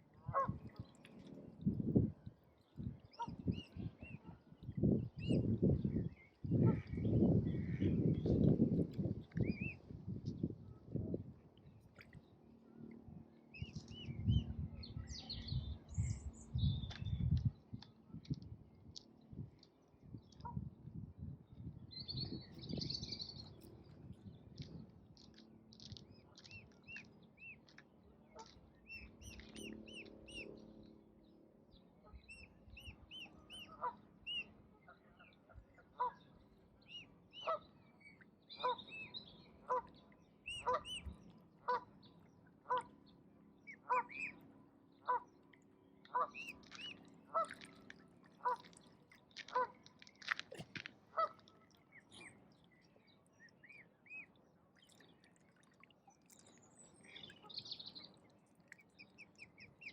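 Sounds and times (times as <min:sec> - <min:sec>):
songbirds chirping: 0:21.4 - 0:59.9.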